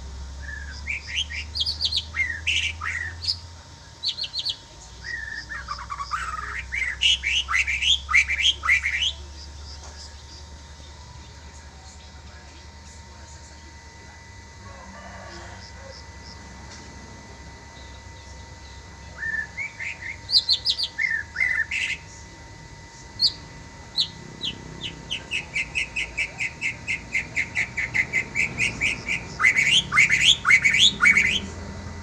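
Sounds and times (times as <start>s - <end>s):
songbird singing whistled phrases: 0.4s - 3.4s, 4.0s - 9.2s, 18.6s - 22.0s, 23.2s - 31.6s.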